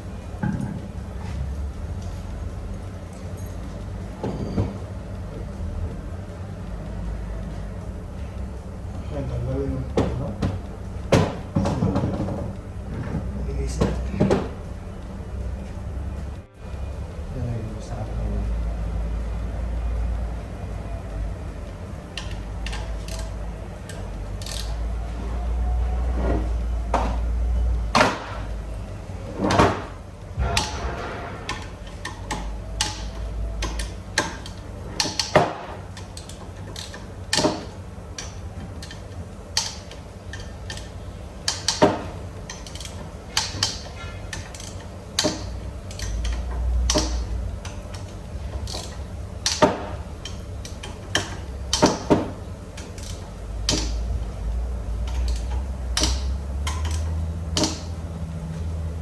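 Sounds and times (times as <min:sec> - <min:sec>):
tools clinking on metal parts: 0:22.1 - 0:24.8, 0:30.4 - 0:52.2, 0:55.0 - 0:58.0
low rumble: 0:30.2 - 0:33.6.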